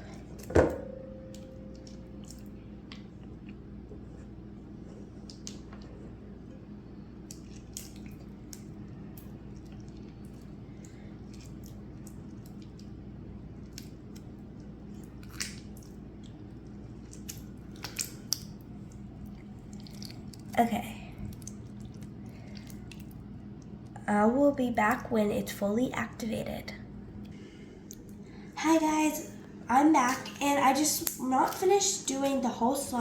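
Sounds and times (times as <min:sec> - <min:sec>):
slime squelching and clicking: 0:05.2 - 0:05.9, 0:07.2 - 0:13.0, 0:13.6 - 0:20.6, 0:30.0 - 0:32.2.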